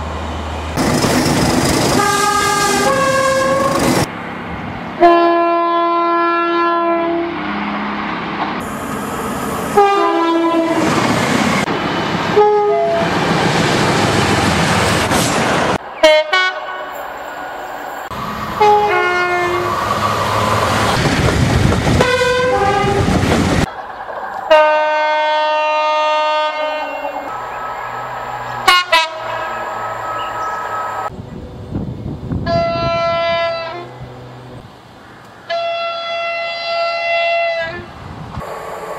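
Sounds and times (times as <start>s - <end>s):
train rushing noise: 0.0s - 5.6s, 6.8s - 38.9s
train wheel clatter: 0.8s - 4.1s, 19.8s - 24.5s
two-tone train horn blasts: 2.0s - 3.8s, 5.0s - 7.4s, 9.7s - 11.0s, 12.3s - 13.1s, 16.0s - 17.0s, 18.6s - 19.8s, 22.0s - 23.2s, 24.5s - 28.0s, 28.6s - 31.3s, 32.4s - 34.1s, 35.5s - 37.9s.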